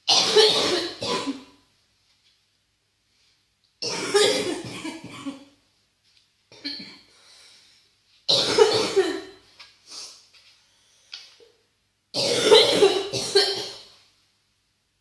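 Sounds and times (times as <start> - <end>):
person coughing harshly: 0.0 - 1.6, 3.8 - 5.5, 8.3 - 9.4, 12.2 - 13.9.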